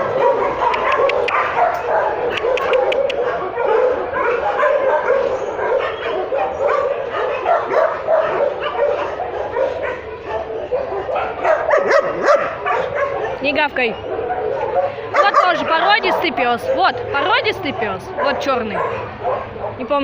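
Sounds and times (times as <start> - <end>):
dogs barking and yelping: 0.0 - 20.0.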